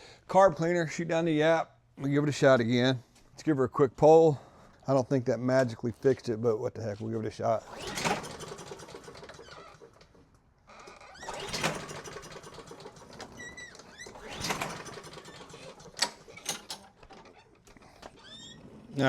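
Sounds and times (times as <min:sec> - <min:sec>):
lawn mower engine cranking: 0:07.6 - 0:19.0
recoil starter pulls: 0:07.6 - 0:19.0.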